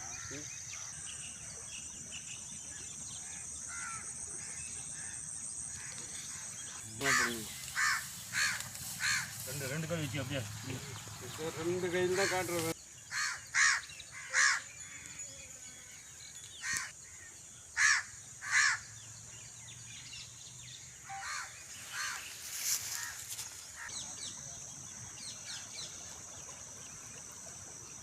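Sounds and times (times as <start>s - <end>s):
crows cawing: 3.7s - 5.2s, 5.8s - 9.6s, 12.1s - 14.7s, 17.8s - 18.9s, 21.1s - 22.2s.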